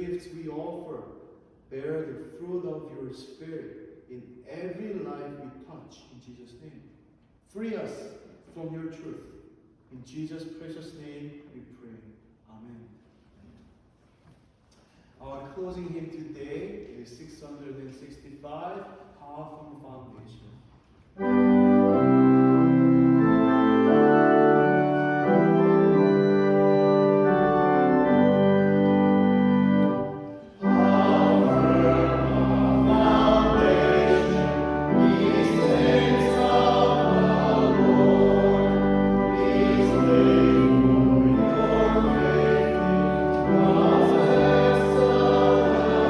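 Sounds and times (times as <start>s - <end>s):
organ playing held chords: 21.2s - 46.0s
congregation singing a hymn: 21.8s - 46.0s.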